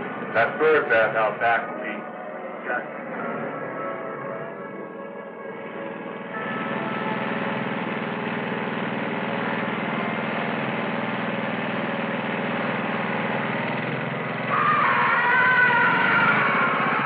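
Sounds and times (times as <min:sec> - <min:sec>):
lawn mower engine running: 0:05.6 - 0:17.0.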